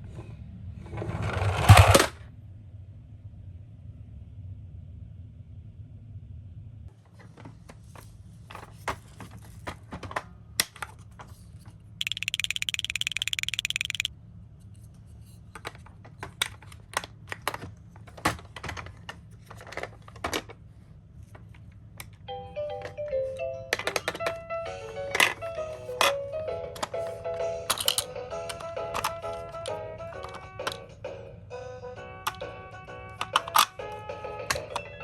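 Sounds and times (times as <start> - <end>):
toy cars clattering: 7.2 - 14.1, 15.2 - 20.6, 21.2 - 31.1, 32.2 - 35.0
electronic tones: 12.0 - 14.1.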